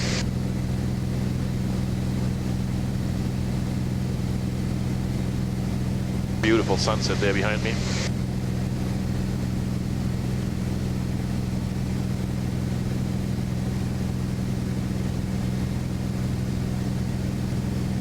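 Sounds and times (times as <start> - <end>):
airplane piston engine drone: 0.0 - 0.7, 5.0 - 8.6.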